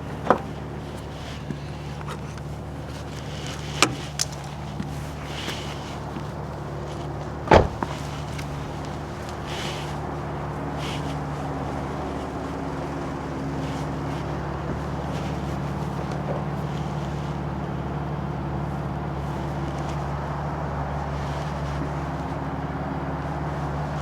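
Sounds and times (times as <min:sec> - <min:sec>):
low motor hum: 0:00.0 - 0:24.0.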